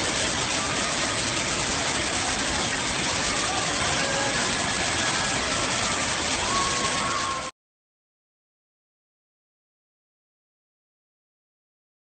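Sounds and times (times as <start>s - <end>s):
waterfall rushing: 0.0s - 7.5s.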